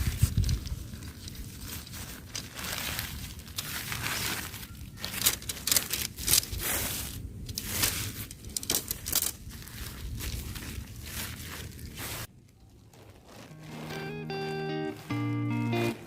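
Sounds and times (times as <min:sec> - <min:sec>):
rustling and crinkling: 0:00.0 - 0:16.0.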